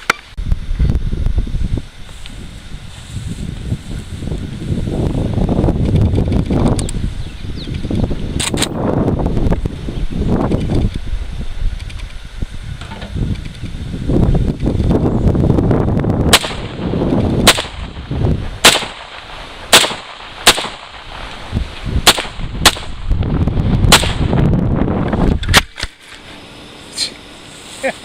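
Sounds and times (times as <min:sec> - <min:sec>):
wind rumbling on microphone: 0:00.0 - 0:26.0
gunshots: 0:16.3 - 0:21.4, 0:22.0 - 0:23.0, 0:23.9 - 0:24.4.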